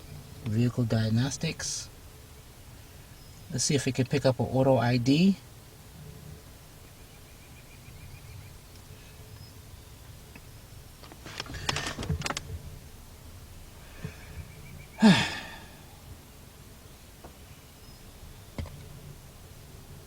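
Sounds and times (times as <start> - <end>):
clicks and rustling: 10.3 - 12.7.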